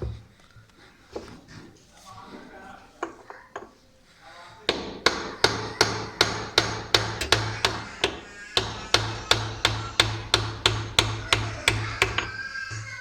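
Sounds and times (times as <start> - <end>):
hammer striking a bolt: 4.7 - 13.0.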